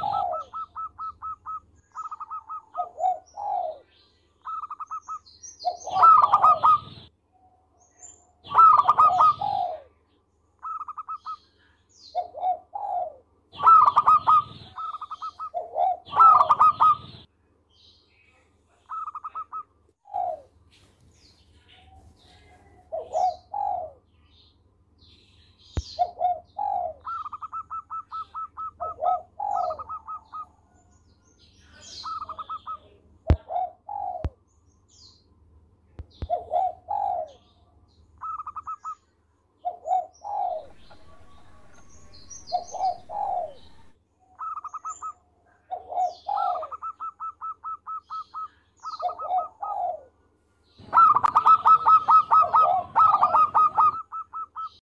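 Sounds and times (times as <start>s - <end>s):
dove cooing: 0.0s - 7.1s, 8.4s - 10.0s, 12.1s - 17.3s, 18.8s - 20.6s, 21.8s - 24.1s, 25.8s - 30.7s, 31.8s - 34.4s, 36.2s - 37.5s, 38.2s - 39.0s, 39.6s - 50.2s, 50.8s - 54.8s
small birds chirping: 0.0s - 54.8s.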